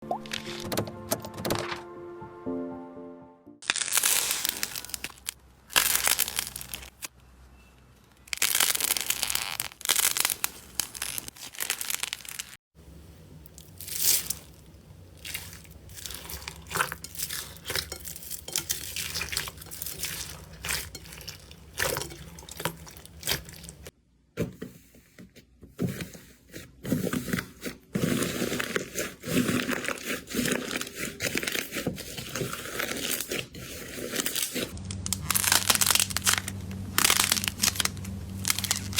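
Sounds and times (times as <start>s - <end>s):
slime crackling and popping: 3.6s - 7.1s, 8.3s - 12.6s, 13.5s - 23.9s, 28.4s - 38.9s.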